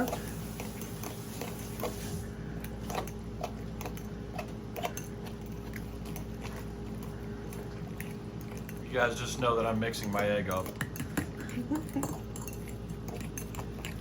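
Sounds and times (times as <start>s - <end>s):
wet squishing of food mixing: 0.0s - 14.0s
utensil clicks and taps on bowl: 10.0s - 12.6s.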